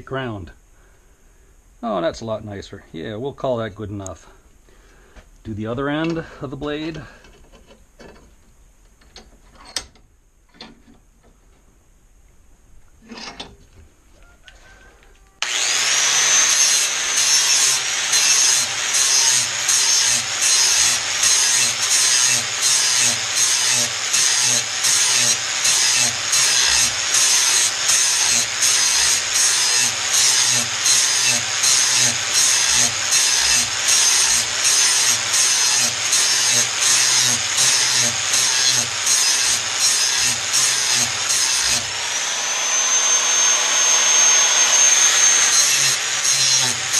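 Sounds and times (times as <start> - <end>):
angle grinder grinding metal: 15.4 - 46.9.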